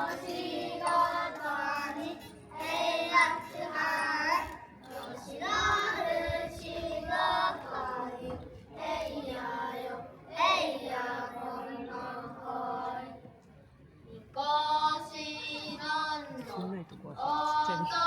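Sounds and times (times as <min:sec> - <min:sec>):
person singing unaccompanied: 0:00.0 - 0:08.4, 0:14.2 - 0:16.6, 0:17.2 - 0:18.0.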